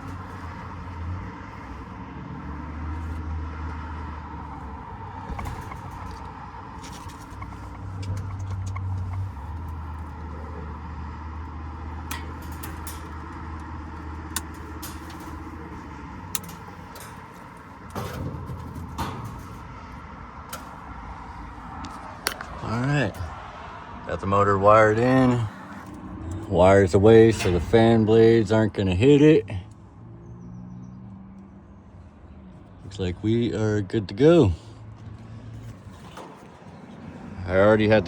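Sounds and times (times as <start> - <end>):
low mechanical hum: 0.0 - 28.8.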